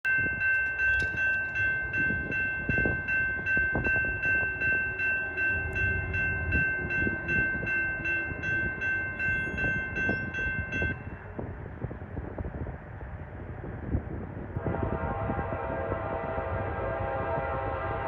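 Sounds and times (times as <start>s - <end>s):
crossing bell ringing: 0.0s - 11.3s
passing train rumble: 0.0s - 18.0s.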